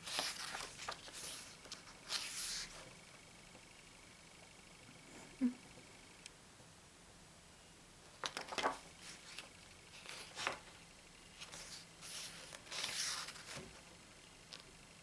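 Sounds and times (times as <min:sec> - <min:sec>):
book pages turning: 0:00.0 - 0:02.9, 0:08.2 - 0:10.7, 0:11.4 - 0:13.8
paper rustling: 0:00.0 - 0:02.9, 0:08.2 - 0:10.8, 0:11.4 - 0:13.8.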